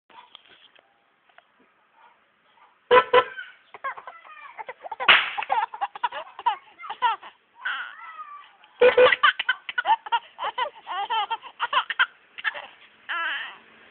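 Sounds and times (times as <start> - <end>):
horn honking: 2.9 - 3.5, 8.8 - 9.3.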